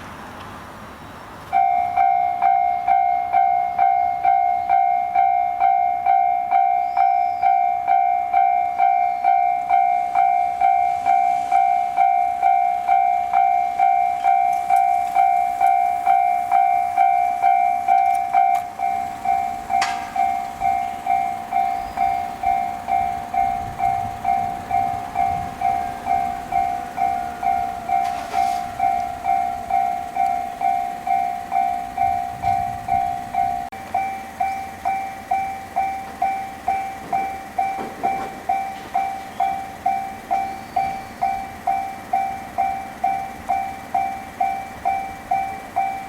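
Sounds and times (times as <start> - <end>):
train passing rumble: 0.0 - 46.0
level crossing bell ringing: 1.5 - 46.0
sharp clank: 19.8 - 20.3.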